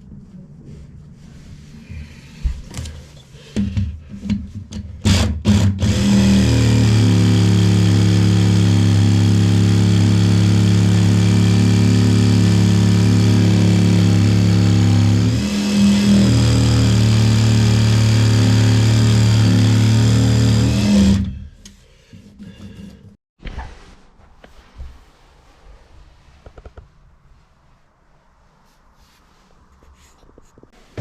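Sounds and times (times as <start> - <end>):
electric power tool motor: 5.0 - 21.3.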